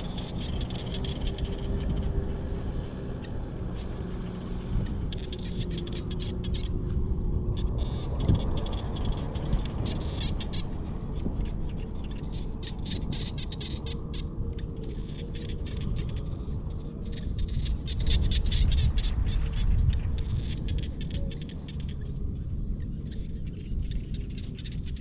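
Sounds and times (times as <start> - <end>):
frogs croaking: 0.0 - 25.0
low rumble: 0.0 - 25.0.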